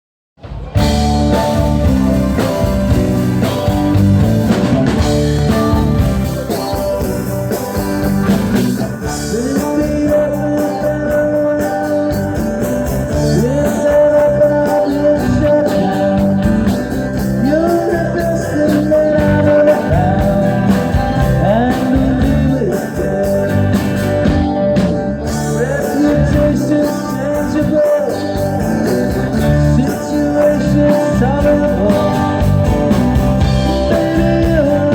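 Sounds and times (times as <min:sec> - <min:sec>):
live rock band playing: 0:00.4 - 0:34.9
person singing: 0:08.8 - 0:34.9.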